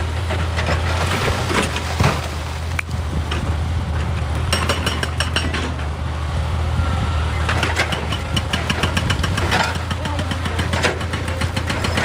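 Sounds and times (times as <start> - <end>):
excavator diesel engine running: 0.0 - 12.0
clicking and clanking: 7.5 - 12.0.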